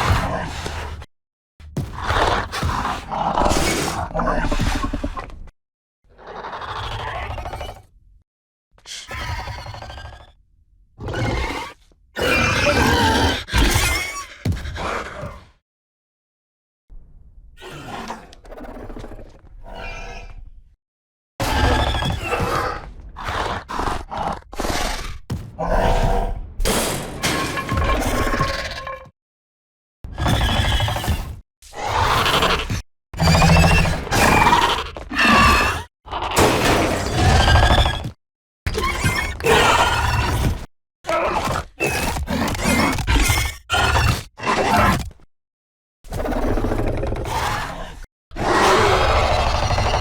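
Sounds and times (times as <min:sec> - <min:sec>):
creature growls and roars: 0:00.0 - 0:01.1, 0:01.8 - 0:05.5, 0:06.1 - 0:07.9, 0:11.0 - 0:15.6, 0:17.6 - 0:20.5, 0:21.4 - 0:26.6, 0:27.2 - 0:29.2, 0:30.1 - 0:38.1, 0:38.7 - 0:45.2, 0:46.1 - 0:50.0.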